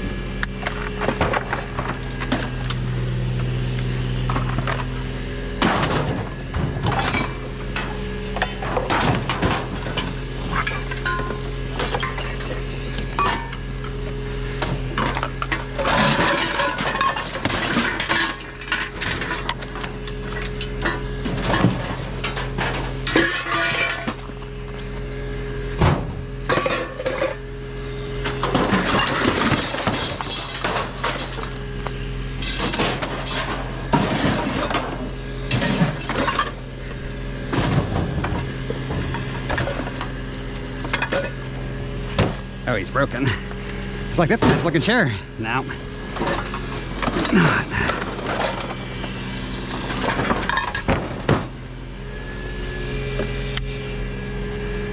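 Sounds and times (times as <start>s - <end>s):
steady low hum: 0.0s - 54.9s
rattling: 45.6s - 51.2s.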